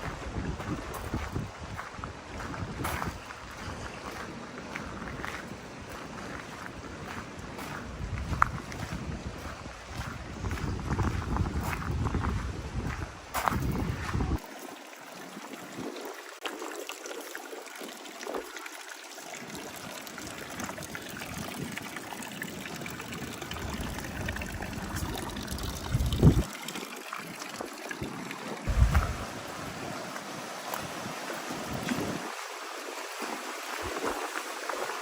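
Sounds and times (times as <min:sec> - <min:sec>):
water trickling: 0:00.0 - 0:35.0
low thumps: 0:28.7 - 0:29.4.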